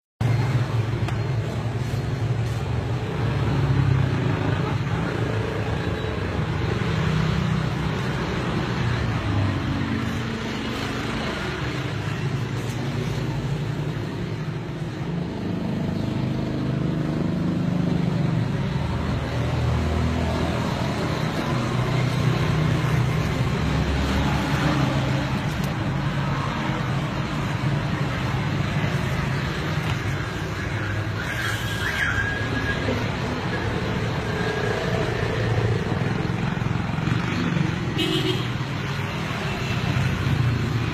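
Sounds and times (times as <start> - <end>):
road traffic passing: 0.2 - 40.9.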